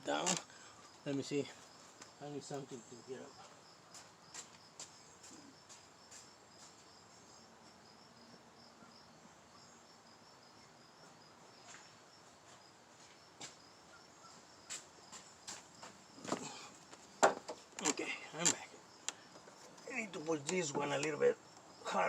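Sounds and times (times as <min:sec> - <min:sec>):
faint insect chirping: 0:00.0 - 0:22.0
faint clicks: 0:17.8 - 0:19.5.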